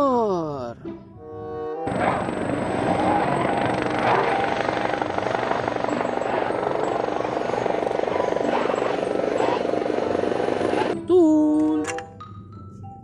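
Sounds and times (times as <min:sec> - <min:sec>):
helicopter rotor chopping: 0:01.9 - 0:11.0.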